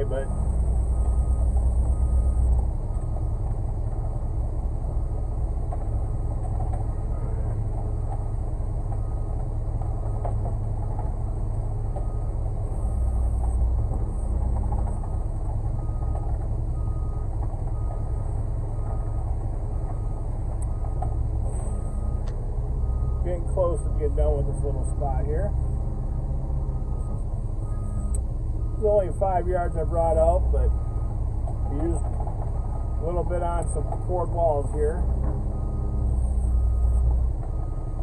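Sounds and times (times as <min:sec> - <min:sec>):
diesel truck engine running: 0:00.0 - 0:38.0.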